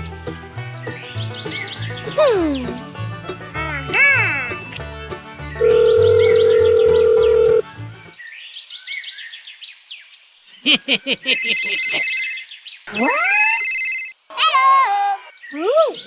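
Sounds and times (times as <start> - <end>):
cartoon music: 0.0 - 8.1, 12.9 - 13.7
whistling chirps: 0.2 - 3.3, 4.0 - 8.1
pulsing electronic ringing: 5.6 - 7.6.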